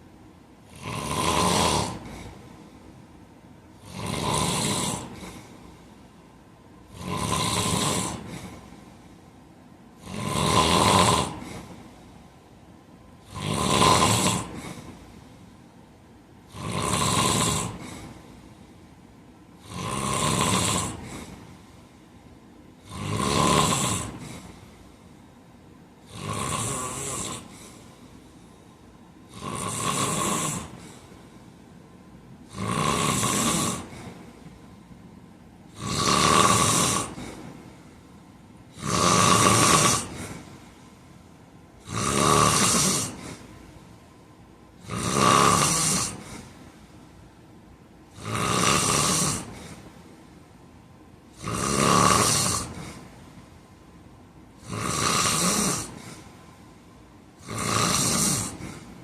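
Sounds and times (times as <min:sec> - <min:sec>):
man snoring: 0:00.6 - 0:02.5, 0:03.7 - 0:05.7, 0:06.8 - 0:08.8, 0:10.0 - 0:11.8, 0:13.2 - 0:15.2, 0:16.5 - 0:18.4, 0:19.6 - 0:21.5, 0:22.8 - 0:25.0, 0:26.0 - 0:28.6, 0:29.3 - 0:31.3, 0:32.4 - 0:34.6, 0:35.7 - 0:37.9, 0:38.7 - 0:40.6, 0:41.8 - 0:43.6, 0:44.8 - 0:46.6, 0:48.1 - 0:49.9, 0:51.3 - 0:53.1, 0:54.6 - 0:56.3, 0:57.4 - 0:59.0.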